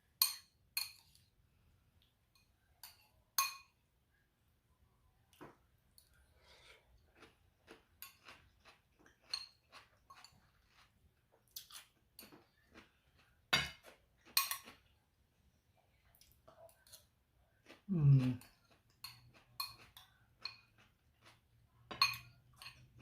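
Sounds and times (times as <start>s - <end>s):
cutlery clinking against plate: 2.4s - 3.8s, 13.5s - 14.8s, 18.4s - 23.0s
chewing: 5.3s - 15.0s, 15.8s - 23.0s.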